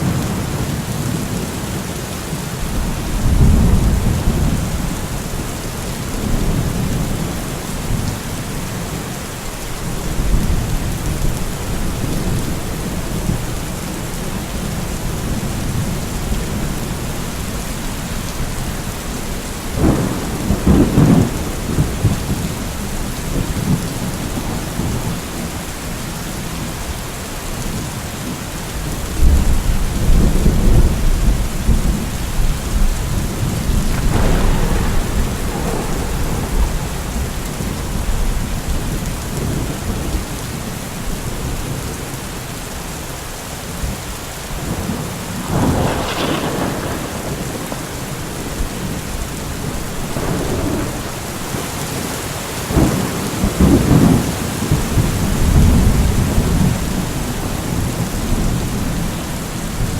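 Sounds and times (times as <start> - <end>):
heavy rain: 0.0 - 59.9
thunder: 2.7 - 5.3, 19.8 - 25.1, 29.2 - 40.2, 44.6 - 52.0, 52.7 - 59.9.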